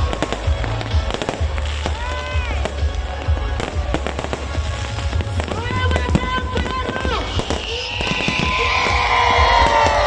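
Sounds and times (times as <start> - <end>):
fireworks bangs and crackles: 0.0 - 10.0
music: 0.0 - 10.0.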